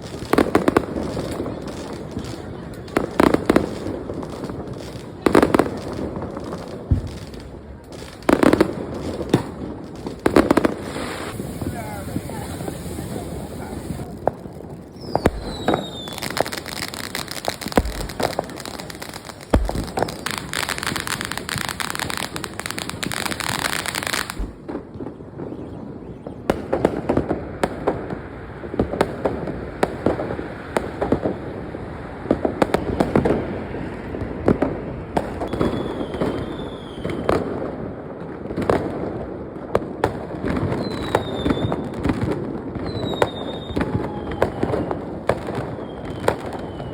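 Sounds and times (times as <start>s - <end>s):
firecrackers crackling: 0.0s - 46.9s
firework bangs: 0.0s - 46.9s
firework whistles falling in pitch: 10.6s - 14.1s, 14.9s - 27.1s, 35.4s - 37.5s, 40.7s - 42.0s, 42.8s - 46.9s.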